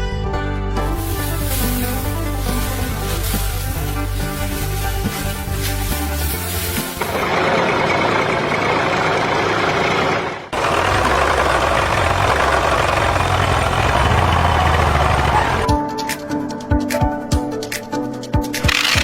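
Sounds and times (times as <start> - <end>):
engine running: 6.8 - 15.7.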